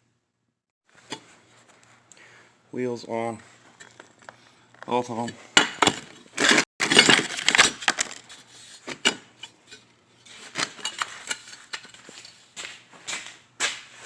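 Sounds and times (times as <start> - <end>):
metal parts clattering: 5.9 - 8.4.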